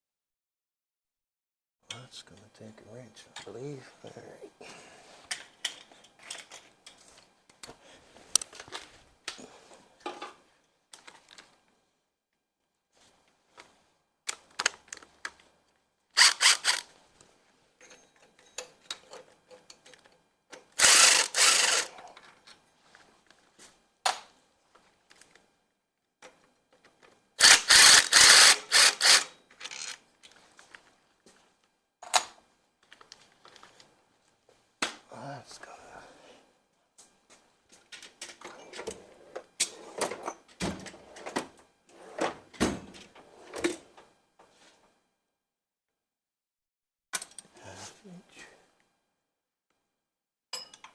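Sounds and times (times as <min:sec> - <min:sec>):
ratchet wrench clicking: 0:16.2 - 0:16.8, 0:20.8 - 0:21.9, 0:27.4 - 0:30.0.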